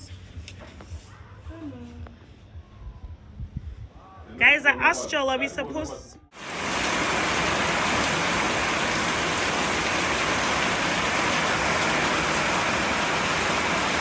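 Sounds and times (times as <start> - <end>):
rain falling: 6.4 - 14.0.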